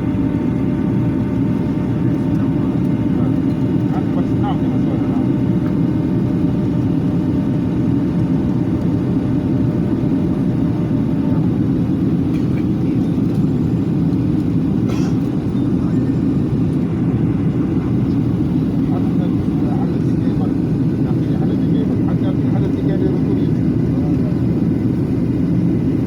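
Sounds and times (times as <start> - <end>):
airliner cabin engine rumble: 0.0 - 26.0.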